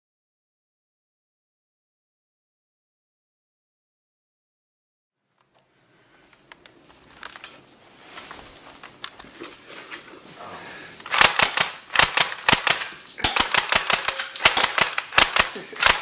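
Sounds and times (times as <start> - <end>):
faint rustling: 5.4 - 11.2
clicks: 11.0 - 16.0
airsoft gun shots: 11.1 - 16.0.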